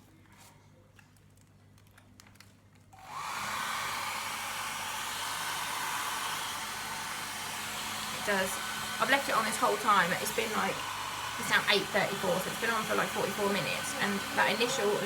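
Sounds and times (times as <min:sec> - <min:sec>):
hairdryer blowing air: 0:03.0 - 0:15.0.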